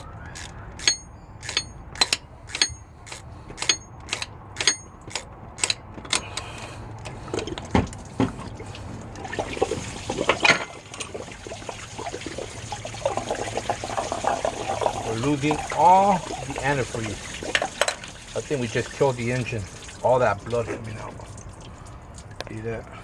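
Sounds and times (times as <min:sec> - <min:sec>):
coolant trickling and splashing: 0:06.2 - 0:23.0.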